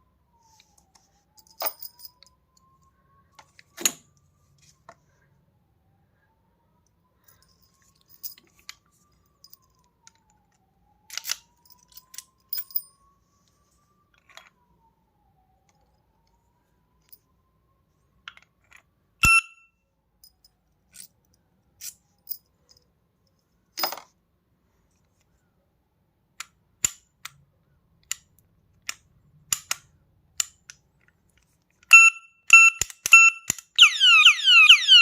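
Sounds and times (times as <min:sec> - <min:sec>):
metallic clicks on padlock: 0:26.4 - 0:27.4, 0:28.0 - 0:30.8, 0:32.5 - 0:33.8.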